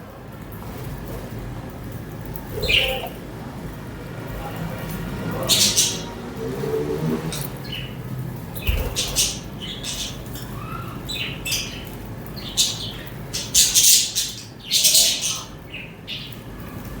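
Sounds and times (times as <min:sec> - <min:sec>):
budgies chirping and squawking: 0:02.4 - 0:03.2, 0:05.3 - 0:08.0, 0:08.6 - 0:16.3.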